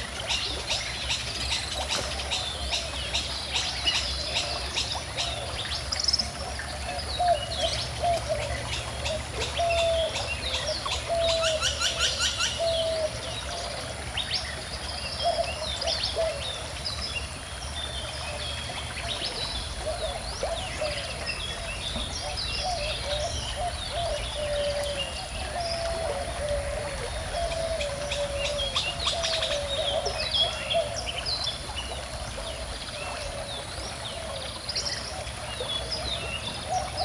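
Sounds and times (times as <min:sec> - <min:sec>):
gently flowing stream: 0:00.0 - 0:37.0
birds chirping and singing: 0:19.4 - 0:31.6.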